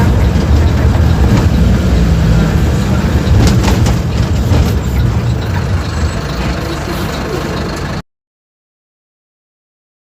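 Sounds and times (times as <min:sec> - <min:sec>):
bus diesel engine droning: 0:00.0 - 0:08.0
short knocks or rattles: 0:03.2 - 0:05.7.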